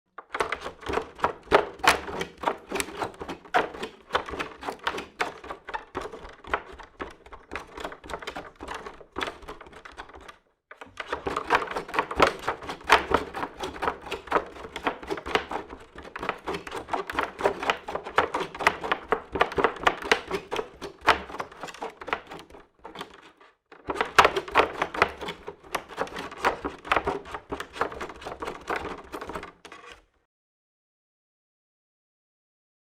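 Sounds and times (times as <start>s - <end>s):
bare feet running on creaky wood: 0.2s - 30.0s.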